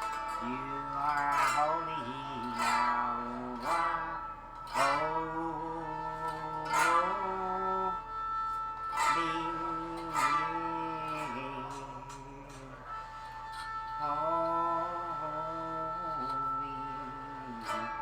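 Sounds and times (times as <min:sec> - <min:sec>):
faint steady high tone: 0:00.0 - 0:18.0
plucked string instrument: 0:00.0 - 0:18.0.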